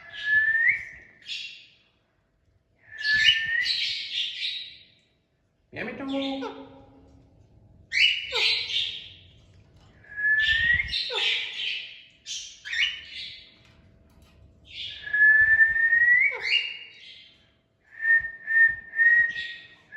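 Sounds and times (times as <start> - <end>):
parrot whistling and calling: 0.0 - 1.7, 3.0 - 4.9, 7.9 - 9.2, 10.0 - 13.5, 14.7 - 17.4.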